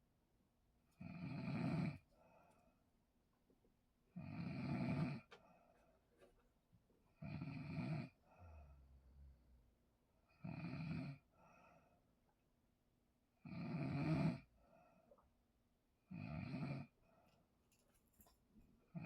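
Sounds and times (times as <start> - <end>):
person snoring: 4.2 - 5.3
soft breath: 11.3 - 12.1.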